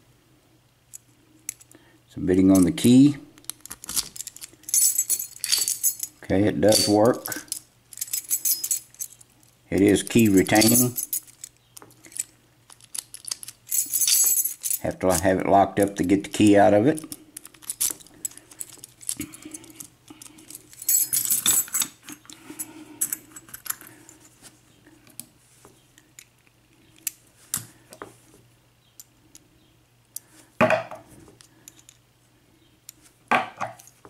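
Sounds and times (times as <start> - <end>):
keys jangling: 3.5 - 9.2, 10.1 - 14.9, 17.0 - 23.9.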